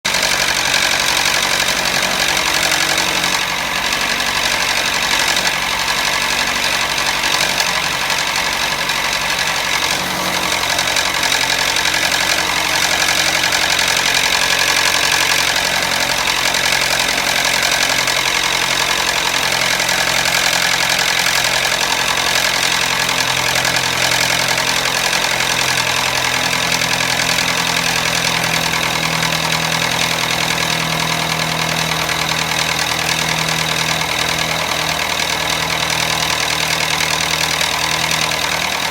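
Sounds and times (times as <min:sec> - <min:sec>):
car engine idling with rattle: 0:00.0 - 0:38.9.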